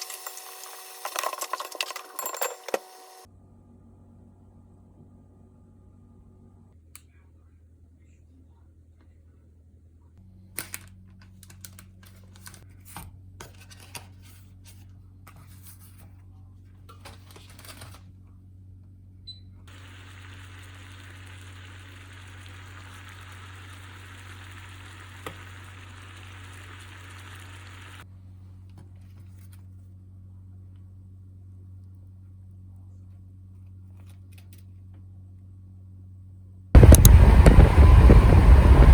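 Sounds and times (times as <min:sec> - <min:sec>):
low steady hum: 0:17.9 - 0:38.9
steady hiss: 0:19.7 - 0:28.0.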